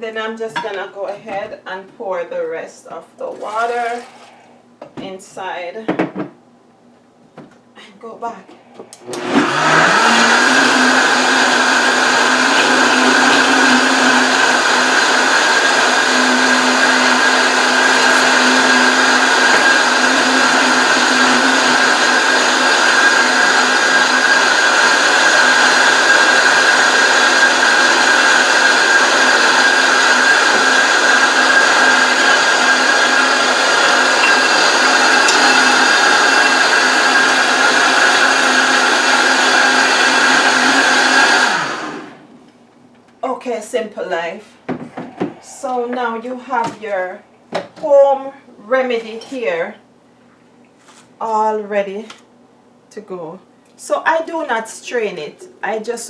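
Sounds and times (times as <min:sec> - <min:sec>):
blender churning mix: 0:03.2 - 0:04.6, 0:08.8 - 0:42.3
blender motor whine: 0:03.2 - 0:04.6, 0:08.8 - 0:42.3.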